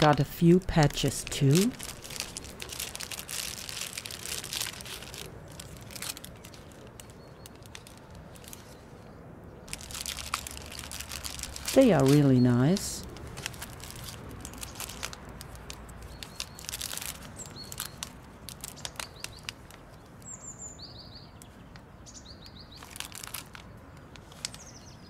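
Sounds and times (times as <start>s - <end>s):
packaging rustling: 0.0s - 9.0s, 9.7s - 20.3s, 22.8s - 24.6s
small bird chirping: 16.0s - 23.1s.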